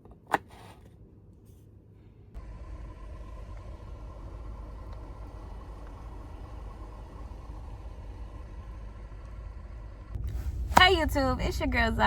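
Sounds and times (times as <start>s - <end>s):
car engine rumble inside cabin: 2.4s - 12.0s.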